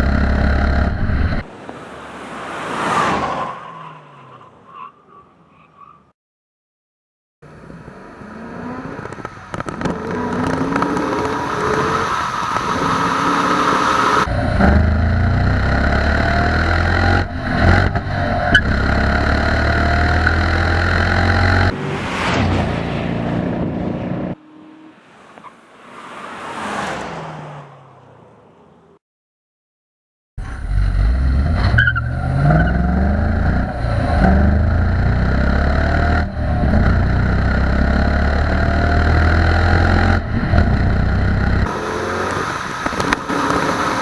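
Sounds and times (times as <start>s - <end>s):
car engine accelerating: 0.0s - 1.5s, 7.5s - 25.1s, 30.4s - 44.0s.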